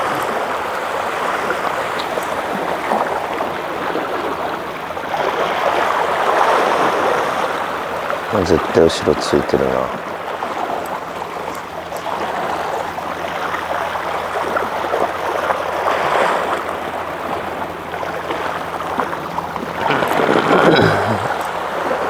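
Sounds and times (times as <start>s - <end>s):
rushing water: 19.6s - 22.0s.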